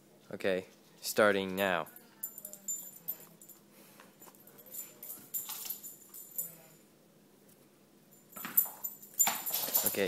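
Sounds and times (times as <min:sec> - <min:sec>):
dog collar tags jingling: 0:01.6 - 0:03.6, 0:04.2 - 0:06.7, 0:08.1 - 0:10.0.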